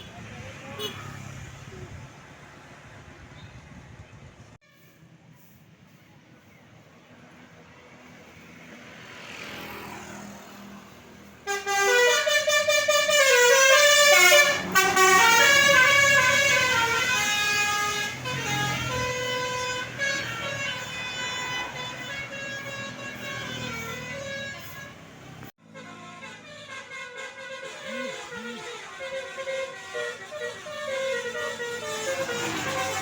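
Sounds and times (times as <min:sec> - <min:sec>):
bus approaching: 0:00.0 - 0:33.0
musical air horn tune: 0:11.4 - 0:25.0, 0:25.6 - 0:33.0.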